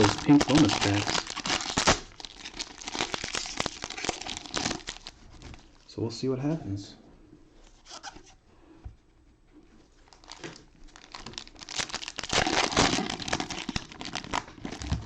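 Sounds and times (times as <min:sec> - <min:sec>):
cellophane wrappers crinkling: 0:00.0 - 0:05.9, 0:10.0 - 0:15.0.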